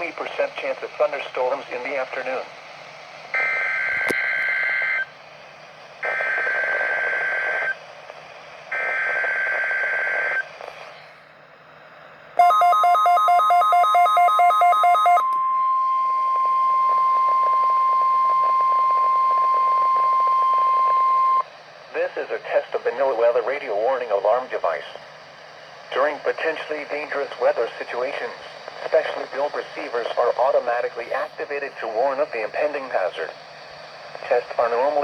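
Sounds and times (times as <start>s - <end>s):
high-pitched warning alarm tone: 12.4s - 21.4s.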